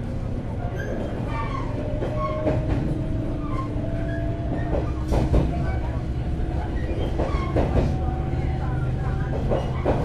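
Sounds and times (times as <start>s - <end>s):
wheels rumbling on rail: 0.0s - 10.0s
wheels clacking over rail joints: 4.0s - 8.0s, 9.0s - 10.0s.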